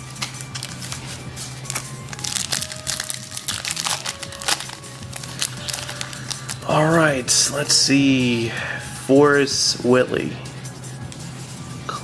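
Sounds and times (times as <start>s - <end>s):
wrapper crinkling: 0.0s - 7.1s
faint background music: 0.0s - 12.0s.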